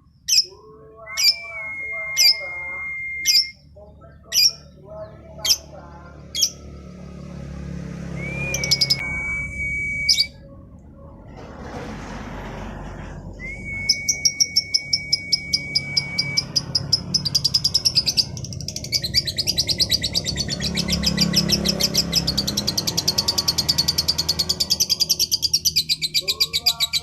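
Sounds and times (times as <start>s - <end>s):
lovebird chattering song: 0.2s - 3.6s, 4.2s - 6.6s, 8.2s - 9.2s, 13.8s - 27.0s
high bird whistle: 1.1s - 3.6s, 8.1s - 10.4s, 13.4s - 16.8s.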